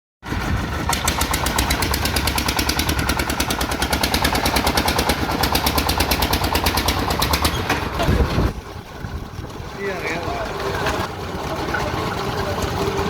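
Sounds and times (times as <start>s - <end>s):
low engine rumble: 0.2s - 13.0s
powered hammer striking concrete: 0.8s - 8.0s.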